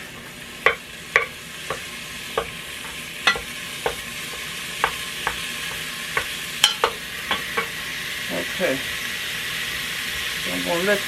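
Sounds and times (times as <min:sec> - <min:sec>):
meat sizzling: 0:00.0 - 0:11.0
utensil knocking against pot: 0:00.7 - 0:07.7.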